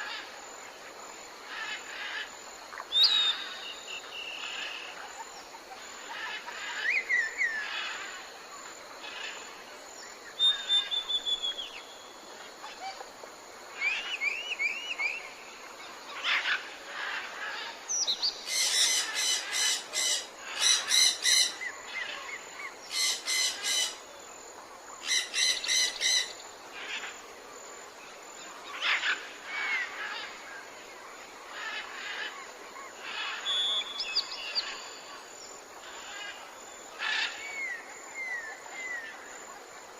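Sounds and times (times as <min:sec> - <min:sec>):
steady hiss: 0:00.0 - 0:39.9
birds chirping and whistling: 0:10.4 - 0:11.8, 0:33.5 - 0:34.8.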